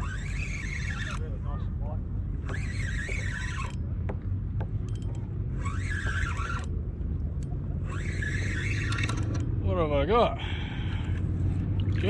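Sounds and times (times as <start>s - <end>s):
fishing reel winding: 0.0s - 1.4s, 2.4s - 3.8s, 4.9s - 6.8s, 7.4s - 9.6s
steady low rumble: 0.0s - 12.0s.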